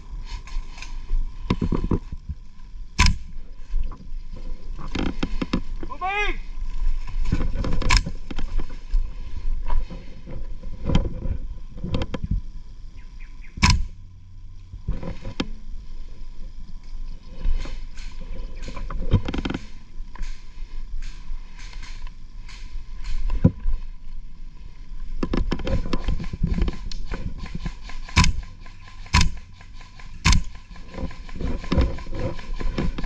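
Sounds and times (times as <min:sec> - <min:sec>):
sharp knocks: 0:28.1 - 0:31.0.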